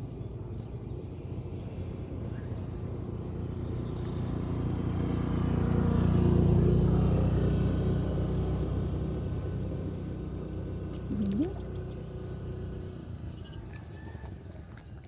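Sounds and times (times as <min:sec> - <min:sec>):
vehicle engine passing: 0:02.7 - 0:13.4.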